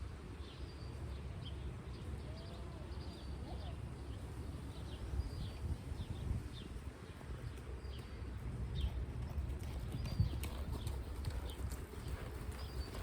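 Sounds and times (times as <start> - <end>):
birds chirping: 0.4 - 13.0
horse hooves clip-clopping: 6.8 - 13.0.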